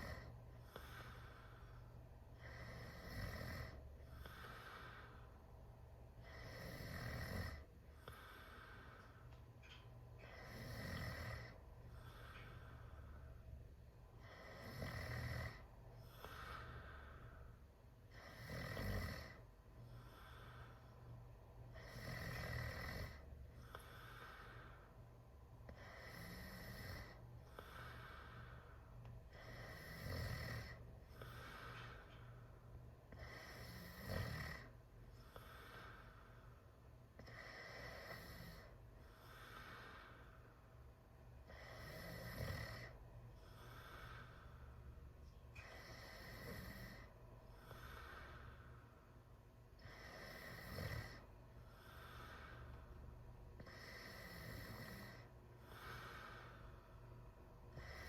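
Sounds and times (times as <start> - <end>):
person snoring: 0.0 - 1.6, 2.4 - 5.3, 6.2 - 9.0, 10.2 - 12.7, 14.2 - 17.3, 18.1 - 20.8, 21.7 - 24.8, 25.7 - 28.6, 29.3 - 32.0, 33.1 - 36.2, 41.5 - 43.0, 45.6 - 48.7, 49.8 - 52.7, 53.6 - 56.7, 57.7 - 58.0.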